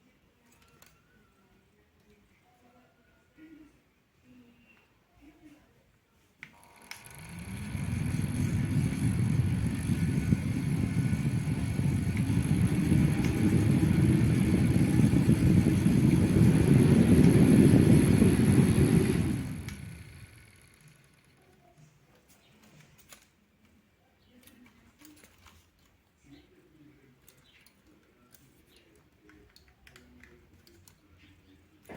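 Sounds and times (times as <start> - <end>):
high motor whine: 6.6 - 21.2
fan airflow rushing: 6.8 - 21.2.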